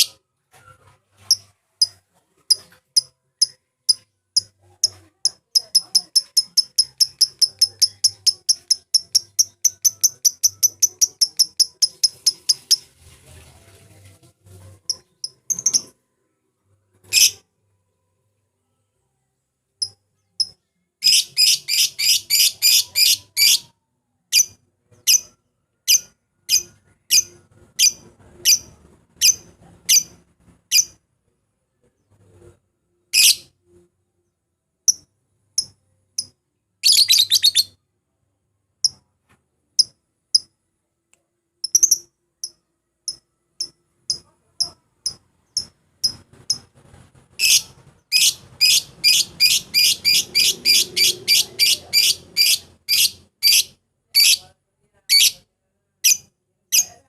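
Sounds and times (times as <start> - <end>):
lovebird chirping: 1.2 - 12.9, 14.8 - 16.0, 19.8 - 23.7, 34.9 - 37.8, 41.6 - 46.6, 47.4 - 54.4.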